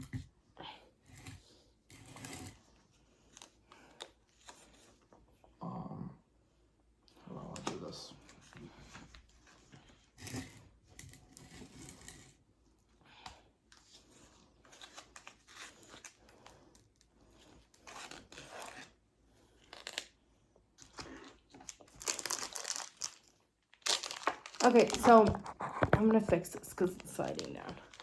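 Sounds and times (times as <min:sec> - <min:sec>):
packaging crinkling and tearing: 0:17.7 - 0:18.9, 0:19.6 - 0:20.2, 0:20.8 - 0:28.0.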